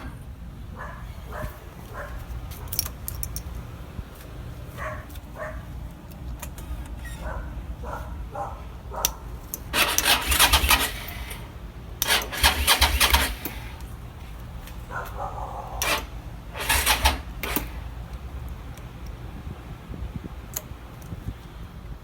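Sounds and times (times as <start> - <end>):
engine cranking on starter: 9.7 - 13.9, 15.8 - 18.0.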